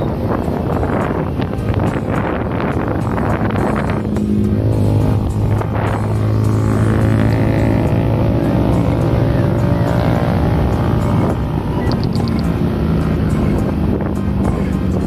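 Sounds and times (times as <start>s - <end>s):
vehicle engine droning: 0.0s - 15.0s
high pips: 11.8s - 12.6s.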